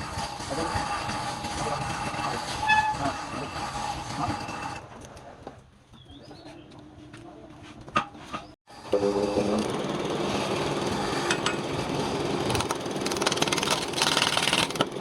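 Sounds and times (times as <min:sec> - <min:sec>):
wood lathe whining: 0:08.8 - 0:15.0.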